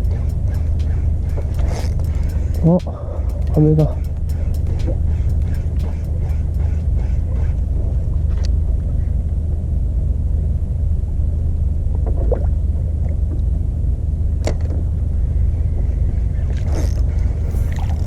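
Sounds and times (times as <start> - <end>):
faint clicks: 0.0 - 6.9
outboard motor rumbling: 0.0 - 8.7, 15.2 - 18.0.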